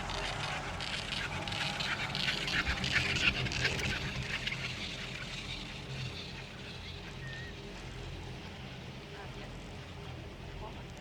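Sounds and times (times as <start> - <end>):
chairlift low hum: 0.0 - 4.7
chairlift crackling rattle: 0.0 - 8.6.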